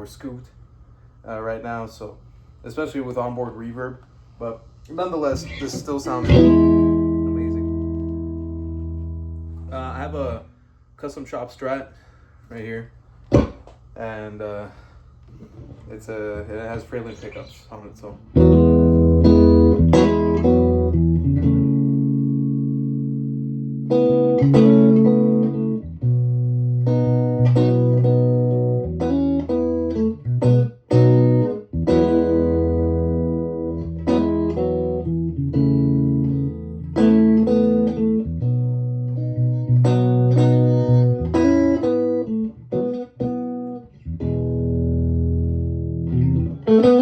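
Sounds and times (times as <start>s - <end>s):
electric guitar chords and notes: 5.3s - 10.4s, 18.3s - 47.0s.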